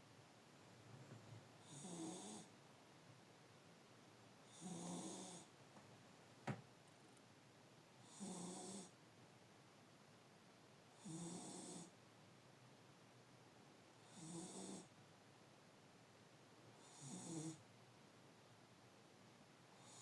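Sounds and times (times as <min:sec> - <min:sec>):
pet snoring quietly: 0:01.6 - 0:02.6, 0:04.4 - 0:05.5, 0:08.0 - 0:09.0, 0:10.9 - 0:12.0, 0:14.0 - 0:14.9, 0:16.8 - 0:17.7, 0:19.8 - 0:20.0.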